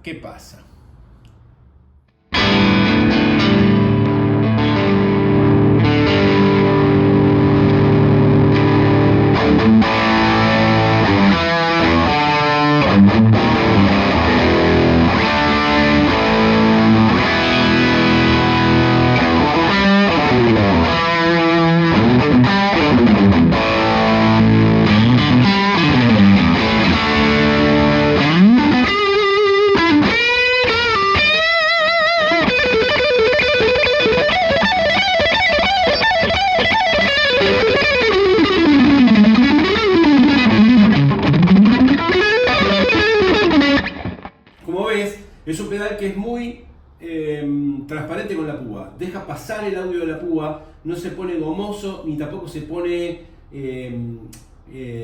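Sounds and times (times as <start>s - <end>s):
distorted electric guitar: 2.3s - 44.7s.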